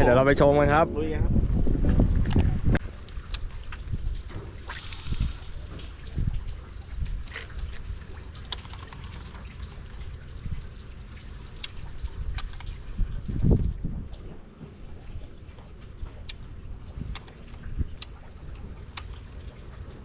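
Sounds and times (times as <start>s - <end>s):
low rumble: 0.0s - 4.3s
water dripping and splashing: 2.2s - 20.0s.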